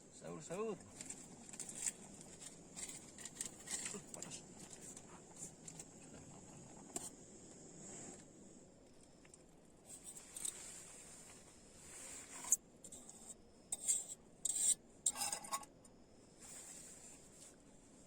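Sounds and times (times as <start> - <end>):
utensil scraping a cooking pot: 12.1 - 15.7.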